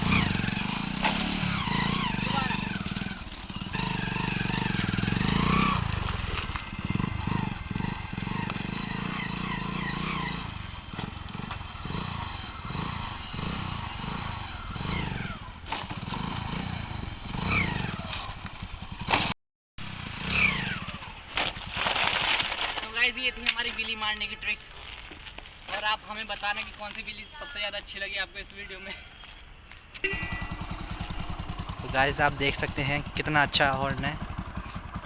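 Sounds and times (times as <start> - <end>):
motorcycle engine revving: 0.0 - 21.2, 30.0 - 35.0.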